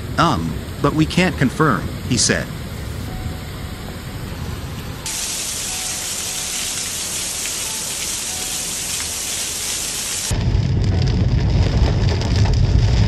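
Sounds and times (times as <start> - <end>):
heavy rain hiss: 0.0 - 10.8
deep rumble: 10.3 - 13.0.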